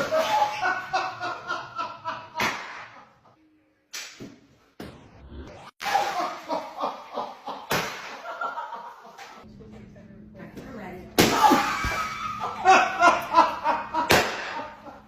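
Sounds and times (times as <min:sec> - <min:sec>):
people laughing: 0:00.0 - 0:03.4, 0:05.9 - 0:09.4, 0:11.5 - 0:15.0.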